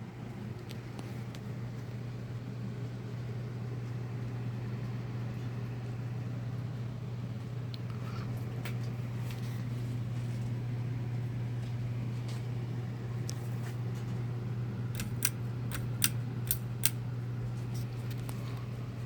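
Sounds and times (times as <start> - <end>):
ceiling fan motor humming: 0.0 - 19.0
sharp clicks: 15.0 - 17.0.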